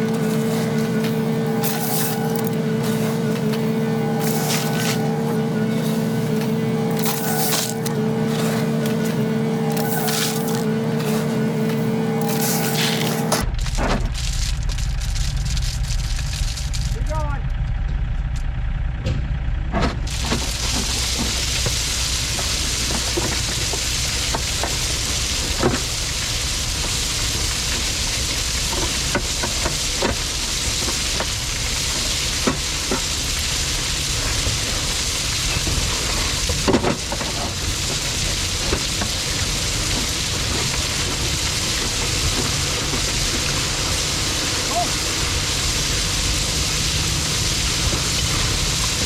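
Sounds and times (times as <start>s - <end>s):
loud hiss: 0.0s - 13.4s
engine rumble: 0.0s - 49.0s.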